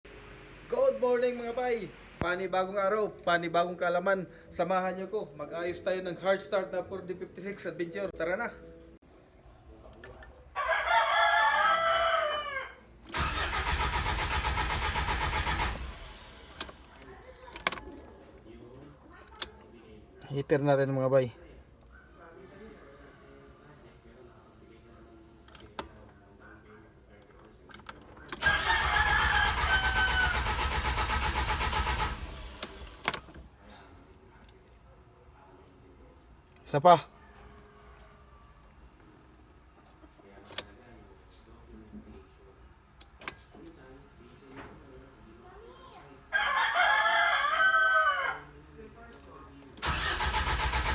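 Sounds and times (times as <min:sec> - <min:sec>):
rooster crowing: 0:10.6 - 0:12.8, 0:28.5 - 0:30.5, 0:46.3 - 0:48.5
diesel engine cranking: 0:13.1 - 0:18.1, 0:28.0 - 0:33.6, 0:49.1 - 0:50.9.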